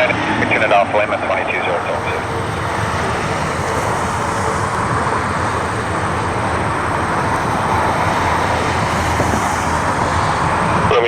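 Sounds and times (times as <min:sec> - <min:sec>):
aircraft engine noise: 0:00.0 - 0:11.0.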